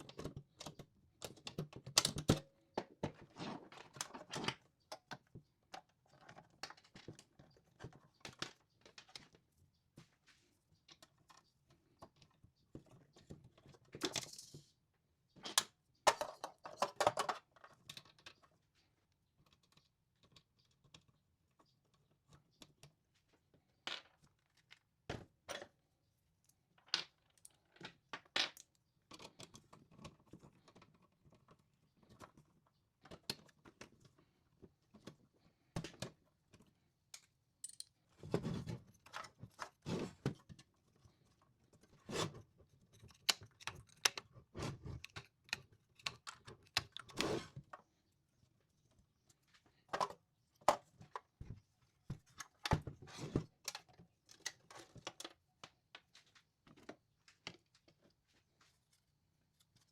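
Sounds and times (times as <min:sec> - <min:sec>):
clicks and knocks of small parts: 0:00.0 - 0:09.4, 0:15.3 - 0:23.0, 0:26.4 - 0:34.2, 0:34.9 - 0:47.9, 0:52.2 - 0:58.2.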